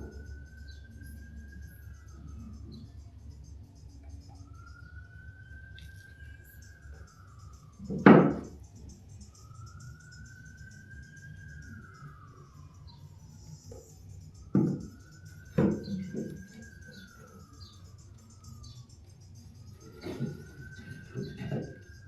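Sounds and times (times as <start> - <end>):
distant siren wailing: 0.0 - 22.0
loud knocks: 7.9 - 8.5, 14.5 - 14.9.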